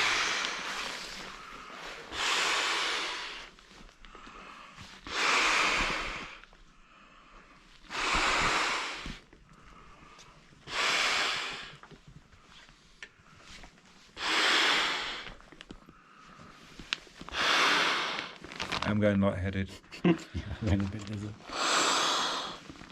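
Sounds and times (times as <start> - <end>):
person blowing into inflatable pad: 5.1 - 6.4.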